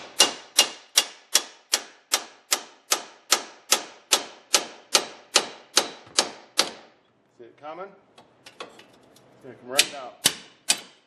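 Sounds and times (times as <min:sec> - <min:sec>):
hammer striking chisel: 0:00.0 - 0:07.0, 0:09.8 - 0:11.0.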